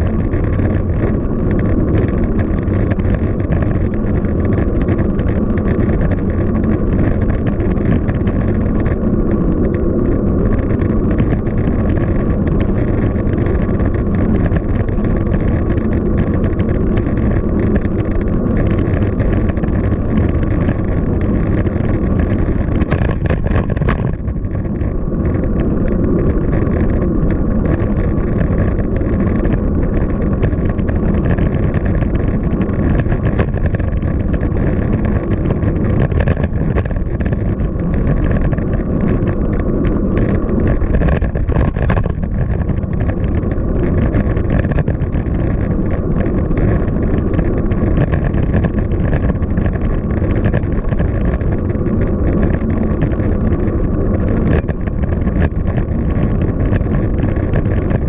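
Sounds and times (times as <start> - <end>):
bicycle tyre noise: 0.0 - 58.0
traffic: 0.0 - 58.0
wind buffeting microphone: 0.0 - 58.0.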